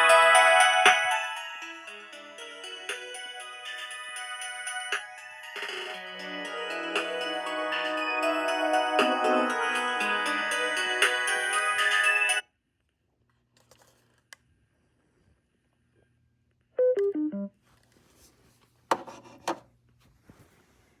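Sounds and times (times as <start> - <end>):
music from a speaker: 0.0 - 12.4.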